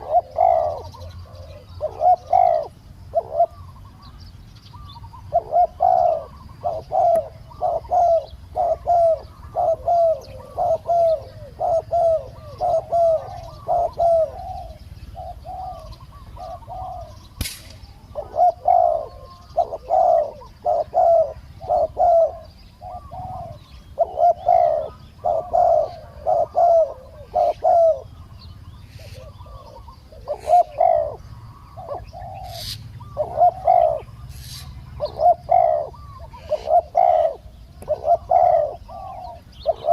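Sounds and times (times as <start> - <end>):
doves cooing: 0.0 - 39.9
sharp click: 17.4 - 17.9.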